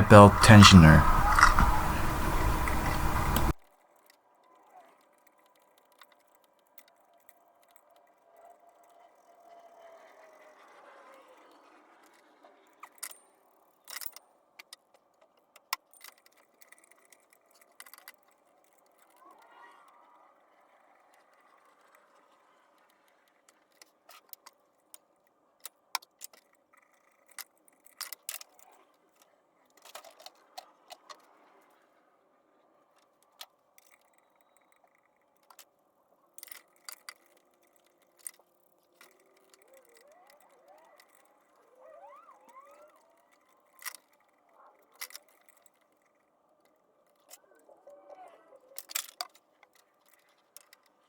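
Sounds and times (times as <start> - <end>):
faint steady hum: 0.0 - 3.6.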